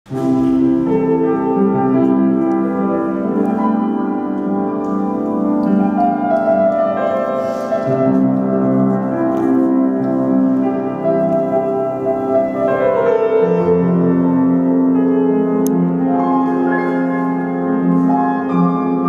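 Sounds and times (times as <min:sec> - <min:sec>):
slow keyboard chords: 0:00.1 - 0:19.0.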